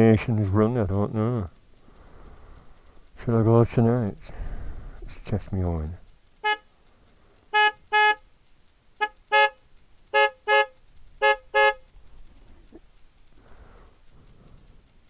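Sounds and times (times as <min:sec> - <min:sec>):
motorcycle horn blasts: 0:06.4 - 0:06.7, 0:07.5 - 0:08.2, 0:09.0 - 0:11.9.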